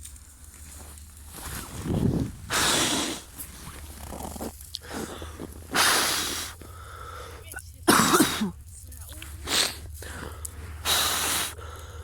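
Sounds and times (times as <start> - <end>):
wind rumble on microphone: 1.2 - 4.2
person blowing on campfire: 1.4 - 6.7, 9.4 - 11.7.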